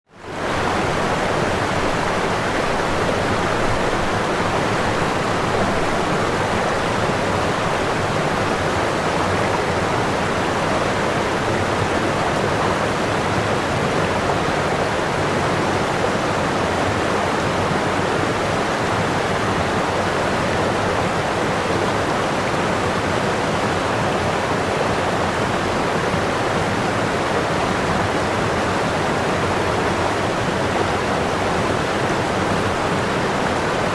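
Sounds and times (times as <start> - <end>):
waterfall rushing: 27.4 - 33.9.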